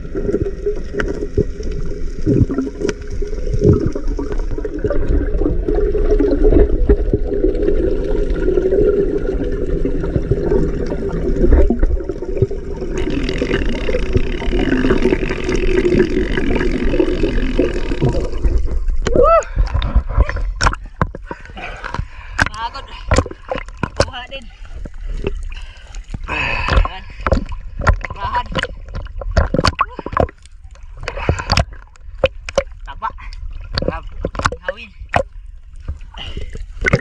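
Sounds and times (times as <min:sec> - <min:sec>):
gurgling underwater noise: 0:00.0 - 0:24.0, 0:24.6 - 0:37.0.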